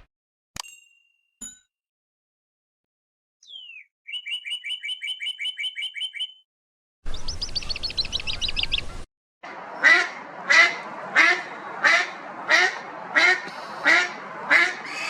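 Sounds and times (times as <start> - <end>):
fast bird trill: 3.4 - 6.4
bird chirps: 3.4 - 6.5, 7.1 - 9.0
duck quacking: 9.5 - 15.0.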